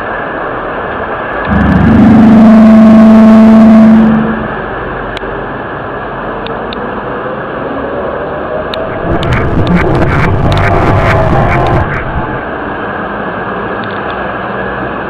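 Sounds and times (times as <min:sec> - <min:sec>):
loud pitched drone: 0:01.3 - 0:05.1, 0:07.0 - 0:13.4
low rumble: 0:01.4 - 0:04.8, 0:08.7 - 0:12.9.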